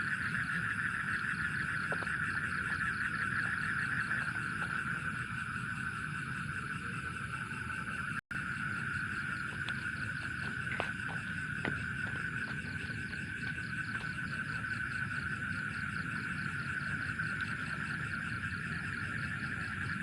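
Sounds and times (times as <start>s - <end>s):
frogs and insects trilling: 0.0s - 20.0s.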